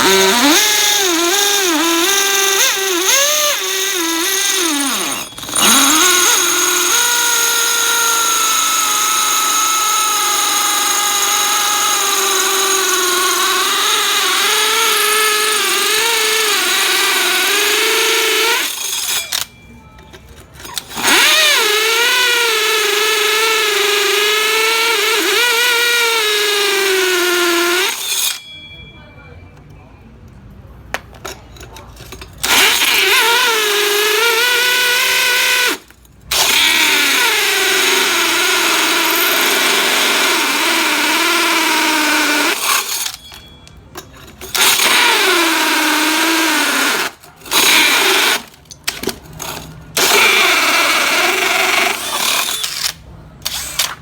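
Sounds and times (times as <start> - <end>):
cordless drill drilling: 0.0 - 19.4, 20.8 - 28.4, 32.4 - 43.2, 44.5 - 48.5, 50.0 - 54.0.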